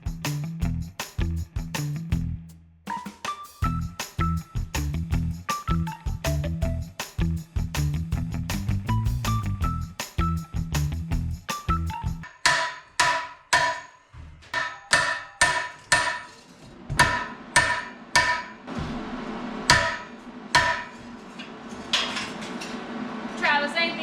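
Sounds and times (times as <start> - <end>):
hammer tapping on steel: 12.2 - 16.4, 17.0 - 18.5.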